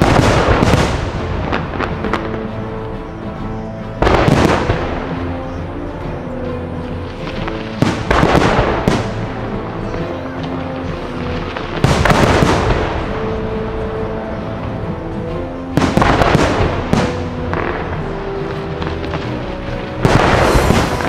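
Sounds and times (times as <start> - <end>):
fireworks bangs and crackle: 0.0 - 5.6, 6.2 - 21.0
background music: 0.0 - 21.0.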